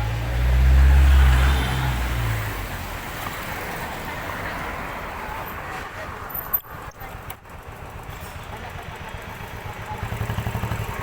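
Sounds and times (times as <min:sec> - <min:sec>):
vehicle engine passing by: 0:00.0 - 0:02.9
road traffic noise: 0:00.0 - 0:11.0.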